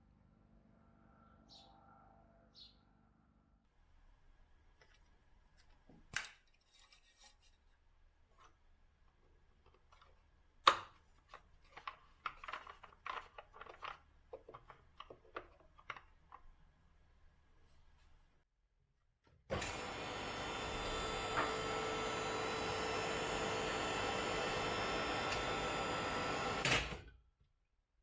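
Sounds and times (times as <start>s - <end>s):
small clicks and clatter: 9.6s - 16.6s.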